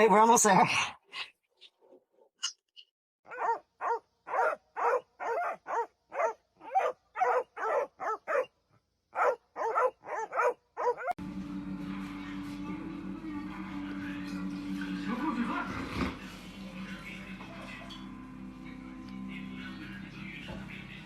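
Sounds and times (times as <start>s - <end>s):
dog barking: 3.3s - 11.2s.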